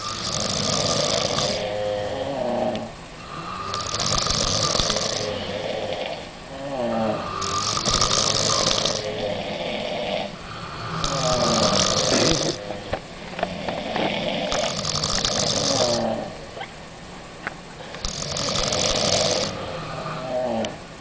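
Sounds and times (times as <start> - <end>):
women snoring: 0.0 - 16.5, 17.8 - 20.8
hissing breath: 0.0 - 16.6.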